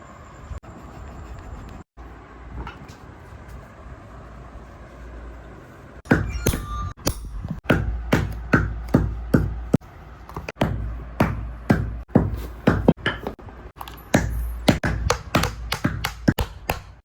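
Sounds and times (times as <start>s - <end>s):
hammer blows: 6.0s - 9.8s.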